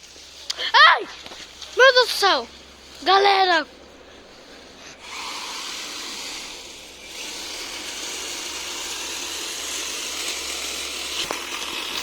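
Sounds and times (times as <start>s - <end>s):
chainsaw cutting wood: 5.0s - 12.0s.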